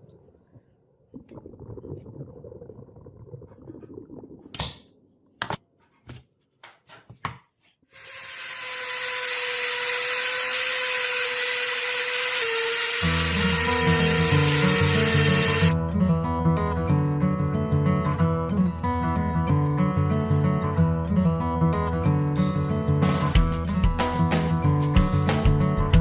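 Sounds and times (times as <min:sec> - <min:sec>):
electric grinder whining: 0:08.0 - 0:15.7
music: 0:13.1 - 0:26.0.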